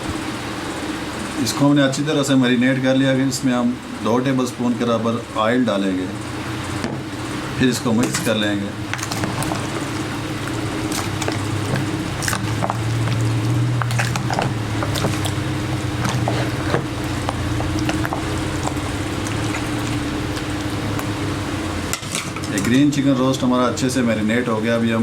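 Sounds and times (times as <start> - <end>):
steady low hum: 0.0 - 25.0
squelching of marinated chicken: 7.3 - 21.5.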